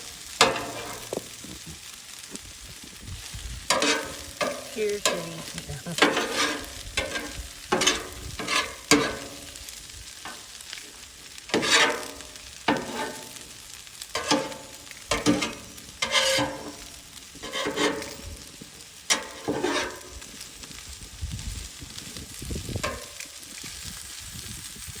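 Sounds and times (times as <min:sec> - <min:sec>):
food sizzling on a griddle: 0:00.0 - 0:25.0
metal spatula scraping steel: 0:00.4 - 0:01.1, 0:03.7 - 0:09.6, 0:11.5 - 0:13.5, 0:14.1 - 0:18.5, 0:19.1 - 0:20.2.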